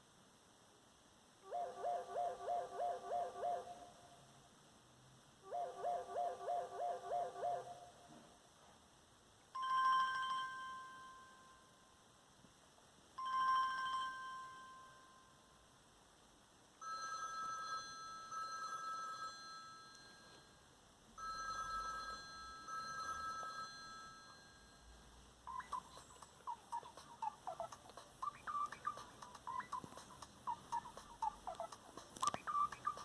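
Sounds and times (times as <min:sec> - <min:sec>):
trilling telephone ring: 0:16.8 - 0:20.6, 0:21.2 - 0:24.9
clicking chirps ringtone: 0:25.5 - 0:33.0.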